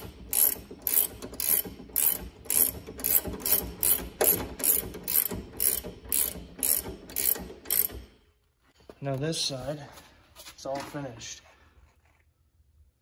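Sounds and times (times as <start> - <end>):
ratchet wrench clicking: 0.0 - 8.1.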